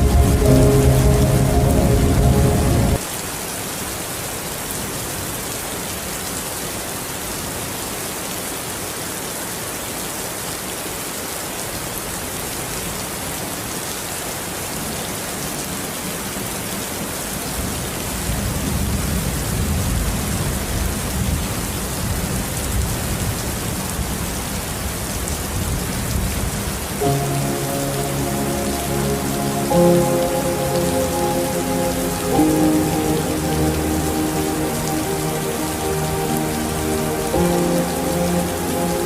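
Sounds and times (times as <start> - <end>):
low rumble: 0.0 - 3.0
soft music with sustained notes: 0.0 - 3.0, 27.0 - 39.0
steady rain falling: 0.0 - 39.0.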